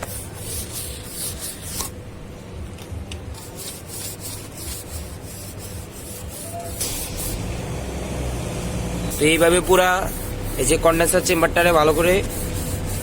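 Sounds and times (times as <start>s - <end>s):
scratchy scrubbing strokes: 3.4s - 7.5s, 9.2s - 13.0s.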